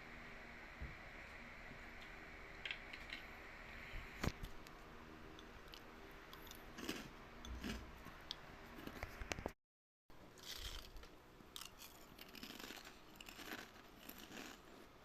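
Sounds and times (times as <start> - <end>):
watermelon crunching while chewed: 6.4 - 7.9, 10.4 - 14.9.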